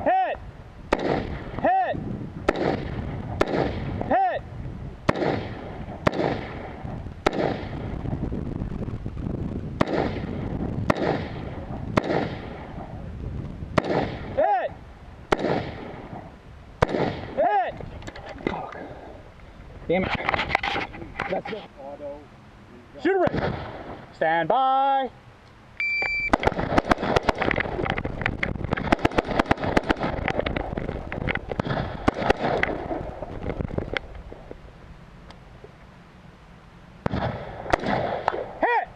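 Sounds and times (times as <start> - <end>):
rifle shots echoing: 0.9 - 1.6, 2.4 - 4.1, 5.0 - 8.0, 9.8 - 13.0, 13.8 - 14.4, 15.3 - 17.4, 23.2 - 24.1, 26.3 - 27.8, 28.7 - 30.7, 31.5 - 33.3, 37.0 - 38.6.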